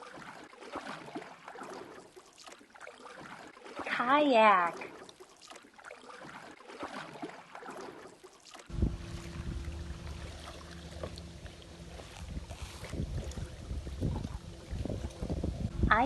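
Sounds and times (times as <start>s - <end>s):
faint low hum: 8.7s - 16.0s
wind rumbling on microphone: 8.7s - 16.0s.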